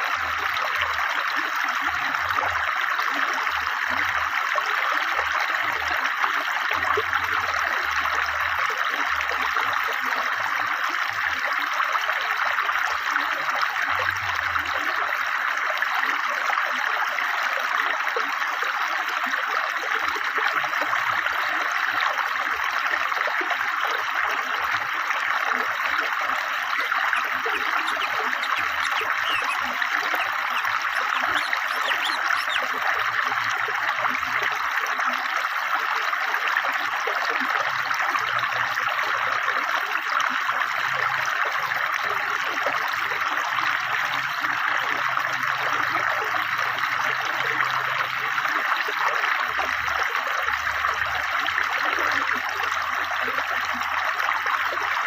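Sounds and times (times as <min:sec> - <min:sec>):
river water babbling: 0:23.5 - 0:38.2.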